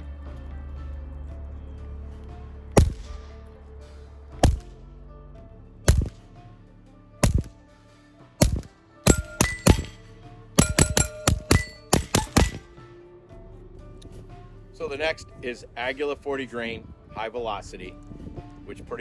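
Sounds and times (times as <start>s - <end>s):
suppressed pistol shots: 2.8s - 3.2s, 4.4s - 4.7s, 5.9s - 6.2s, 7.2s - 7.5s, 8.4s - 10.0s, 10.6s - 12.7s
short metallic rings: 8.4s - 10.0s, 10.6s - 12.7s.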